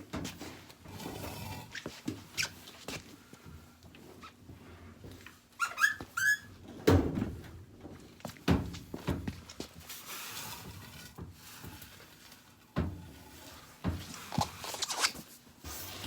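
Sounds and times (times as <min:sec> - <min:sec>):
short squeaks: 0:05.6 - 0:06.5
washing machine knocks and scrapes: 0:06.2 - 0:07.6, 0:08.4 - 0:09.5, 0:12.7 - 0:14.6.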